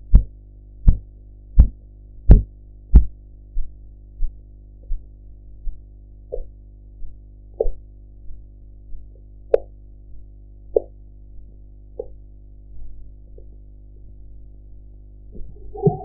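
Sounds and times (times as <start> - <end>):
steady low hum: 0.0 - 16.0
low tapping thumps: 1.6 - 3.1, 15.4 - 16.0.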